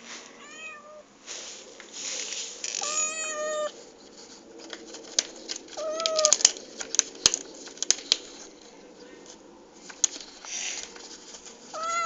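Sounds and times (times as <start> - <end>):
cat meowing: 0.4 - 1.1, 2.8 - 3.8, 5.8 - 6.4, 11.8 - 12.0.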